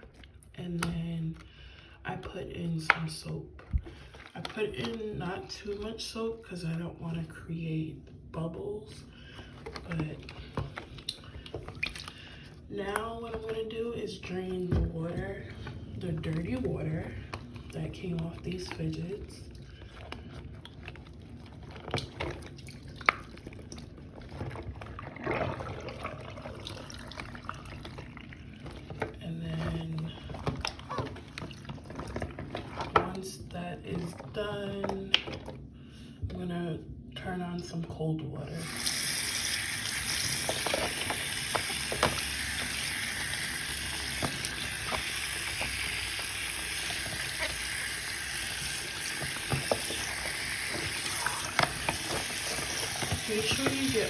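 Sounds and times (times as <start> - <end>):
water sloshing and gurgling: 0.0 - 54.0
water draining from a sink: 15.0 - 33.2, 38.6 - 54.0.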